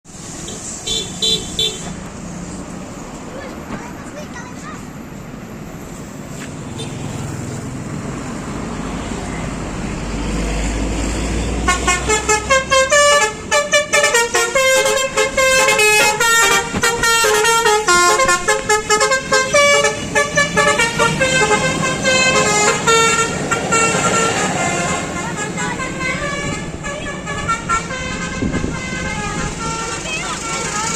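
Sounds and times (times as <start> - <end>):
bus horn playing melody: 0.9 - 2.0, 11.4 - 30.9.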